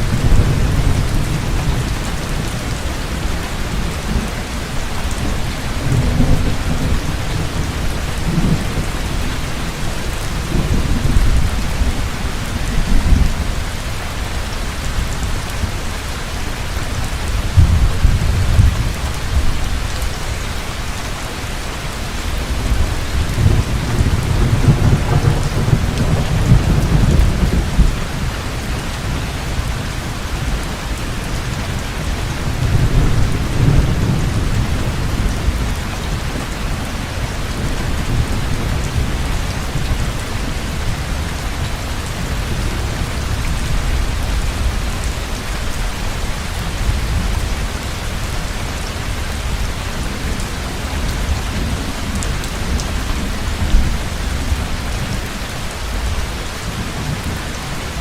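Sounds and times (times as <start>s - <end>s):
rolling thunder: 0.0s - 13.7s, 17.2s - 20.1s, 22.4s - 48.2s
heavy rain: 0.0s - 58.0s.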